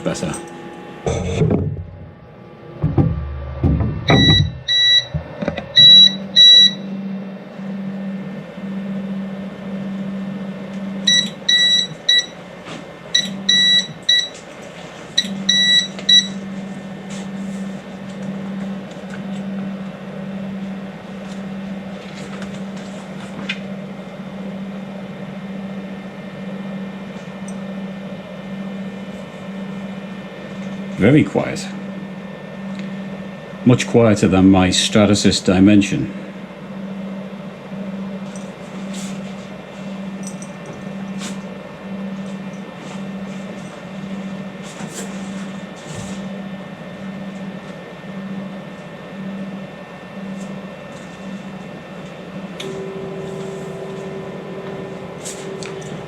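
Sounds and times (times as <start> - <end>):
short high beeps: 4.1 - 5.1.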